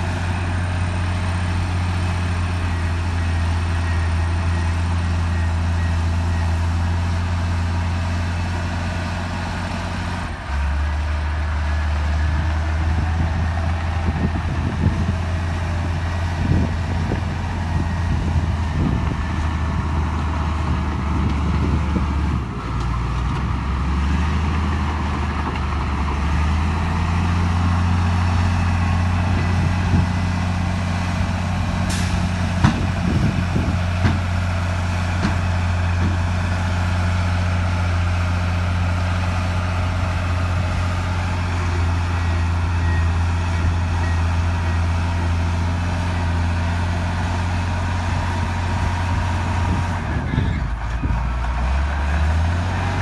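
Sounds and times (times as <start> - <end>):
heavy diesel engine running: 0.0 - 53.0.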